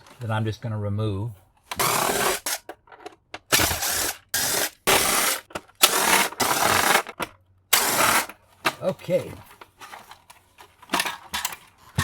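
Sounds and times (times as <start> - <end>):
power screwdriver short bursts: 1.7 - 2.6, 3.5 - 8.4.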